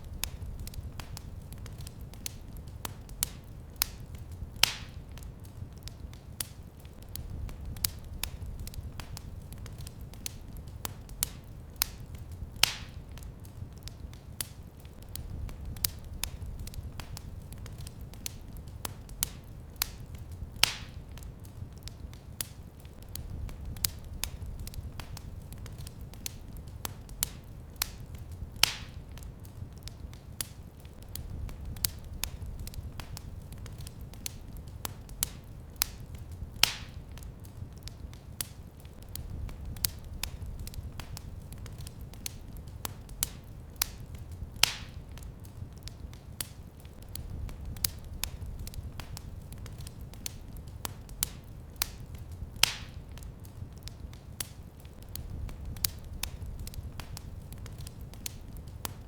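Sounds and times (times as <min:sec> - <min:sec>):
low rumble of flames: 0:00.0 - 0:59.0
wood fire crackling: 0:00.0 - 0:59.0
sharp pop of fire: 0:52.6 - 0:53.0.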